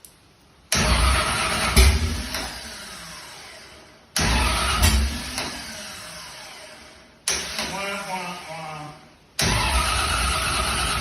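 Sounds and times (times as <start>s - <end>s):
starter motor whining: 0.7s - 7.8s, 9.4s - 11.0s.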